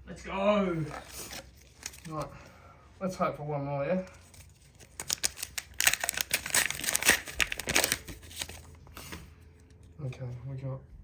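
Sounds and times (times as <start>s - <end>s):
card pack wrapper tearing and crinkling: 0.8s - 2.3s, 4.2s - 8.8s.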